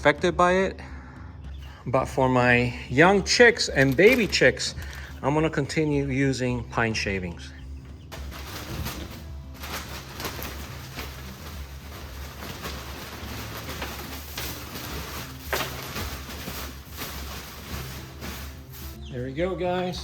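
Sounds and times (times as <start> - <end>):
wood shavings rustling: 3.0 - 5.1, 8.1 - 20.0.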